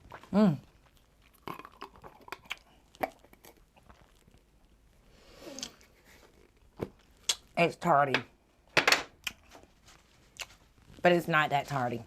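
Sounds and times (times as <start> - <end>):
person chewing fruit: 0.0 - 7.5, 10.3 - 10.9.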